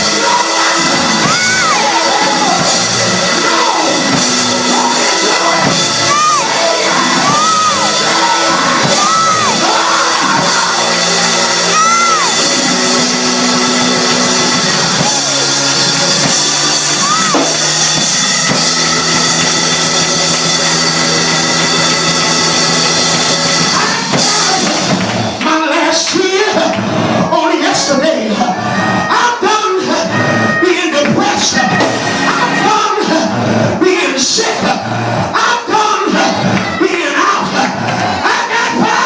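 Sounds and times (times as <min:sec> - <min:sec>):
church music with held chords: 0:00.0 - 0:39.0
whooping voices: 0:00.2 - 0:02.7, 0:04.7 - 0:12.5, 0:16.5 - 0:17.6.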